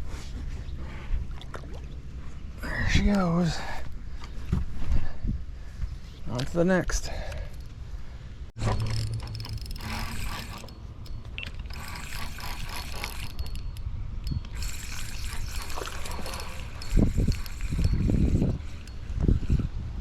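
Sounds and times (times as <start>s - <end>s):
fishing reel ticking: 8.6s - 19.7s.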